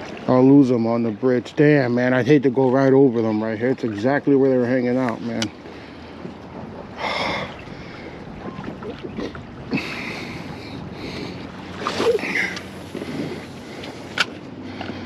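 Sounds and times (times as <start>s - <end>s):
water splashing around a kayak: 0.0s - 15.0s
wind on microphone: 6.2s - 15.0s.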